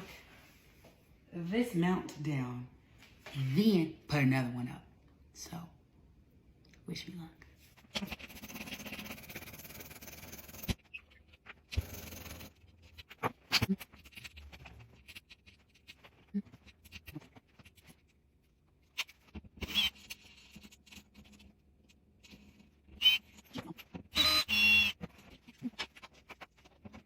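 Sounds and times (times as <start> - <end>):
cordless drill whirring: 24.1 - 25.0.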